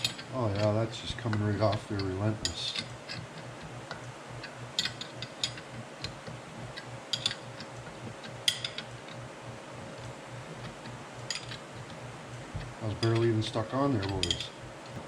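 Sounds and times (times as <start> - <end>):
metal tools clicking and clinking: 0.0 - 3.2, 4.8 - 5.7, 7.1 - 7.4, 11.3 - 11.6, 12.9 - 14.6
faint steady hum: 0.0 - 15.0.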